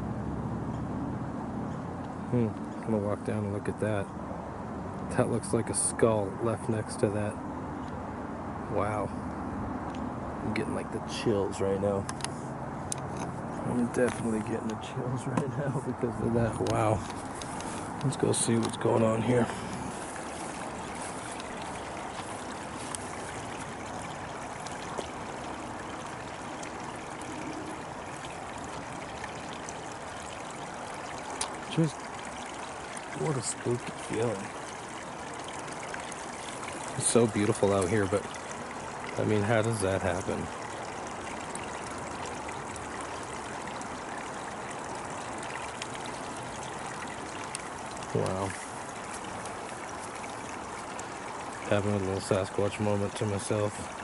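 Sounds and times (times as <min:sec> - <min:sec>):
stream water rushing: 0:00.0 - 0:54.0.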